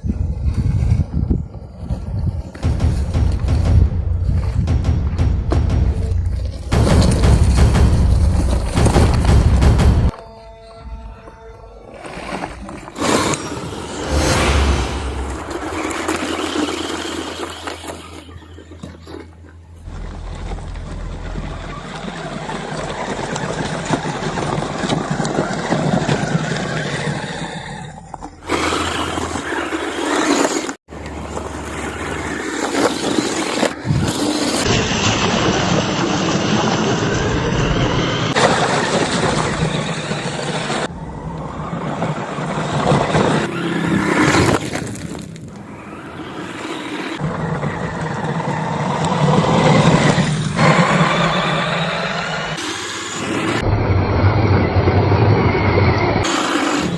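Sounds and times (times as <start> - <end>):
tyres scrabbling over dirt and rocks: 11.9 - 13.9, 15.3 - 34.7, 42.9 - 47.2
toy car motor running: 15.9 - 19.2, 22.1 - 30.8, 31.8 - 34.7.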